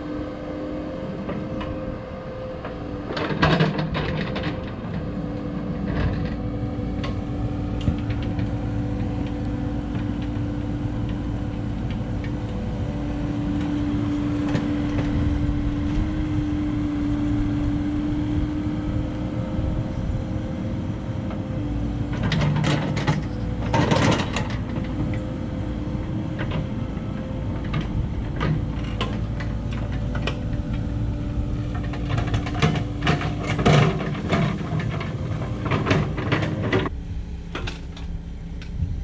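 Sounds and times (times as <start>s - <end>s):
excavator diesel engine running: 0.0s - 39.0s
knocks clanks and scraping: 2.6s - 12.9s, 22.0s - 25.4s, 26.0s - 36.9s.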